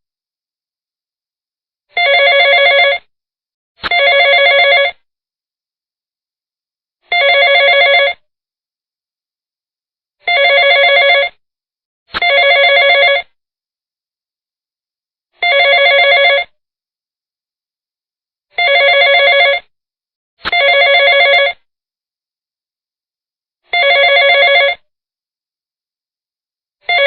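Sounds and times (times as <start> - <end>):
telephone ringing: 2.0 - 3.1, 3.8 - 5.0, 7.1 - 8.2, 10.3 - 11.4, 12.2 - 13.3, 15.4 - 16.6, 18.6 - 19.7, 20.5 - 21.6, 23.7 - 24.9.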